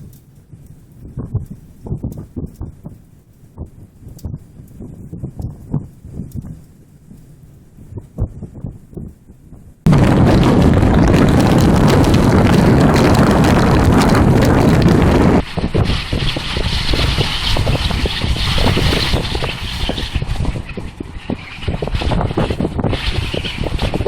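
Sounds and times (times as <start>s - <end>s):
high wind blasting microphone: 0.0s - 24.0s.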